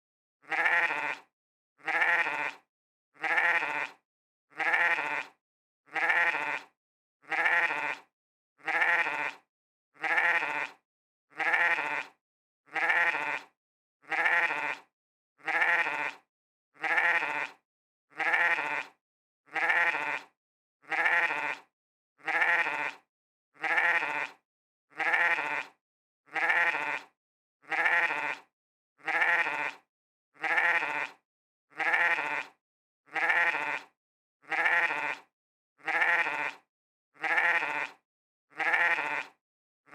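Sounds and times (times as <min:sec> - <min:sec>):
sheep bleating: 0:00.4 - 0:16.2, 0:16.8 - 0:39.4.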